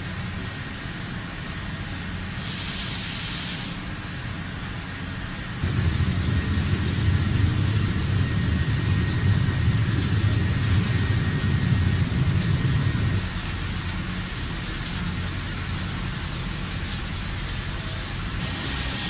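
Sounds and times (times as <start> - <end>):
short hiss of air: 2.4 - 3.9, 18.4 - 19.0
industrial machinery rumbling: 5.6 - 18.7.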